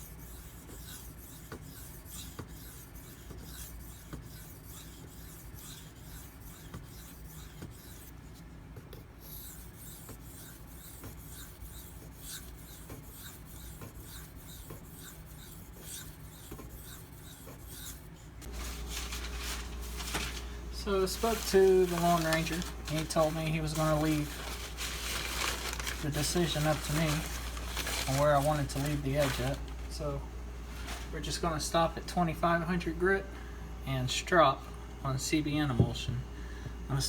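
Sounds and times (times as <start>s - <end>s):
knife blade rasping on whetstone: 0.0s - 8.4s, 9.2s - 18.2s.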